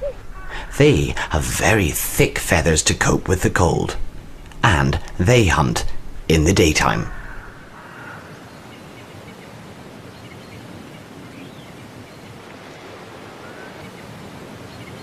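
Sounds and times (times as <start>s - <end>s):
outdoor hiss: 0.0s - 15.0s.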